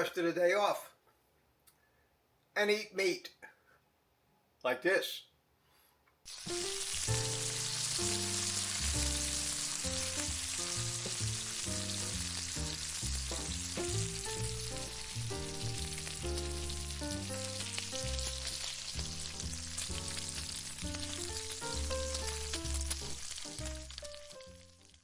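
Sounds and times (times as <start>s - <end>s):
steak sizzling in a pan: 6.2s - 25.0s
background music: 6.3s - 25.0s.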